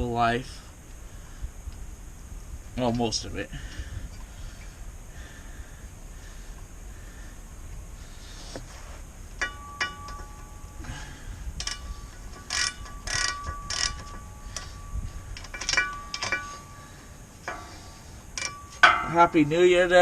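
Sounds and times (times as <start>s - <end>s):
metal tools clinking: 9.4s - 19.6s.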